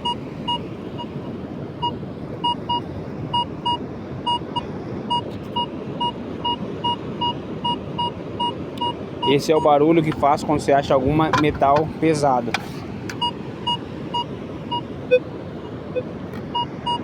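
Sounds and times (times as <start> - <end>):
metal detector beeps: 0.0 - 1.1, 1.8 - 10.2, 13.1 - 17.0.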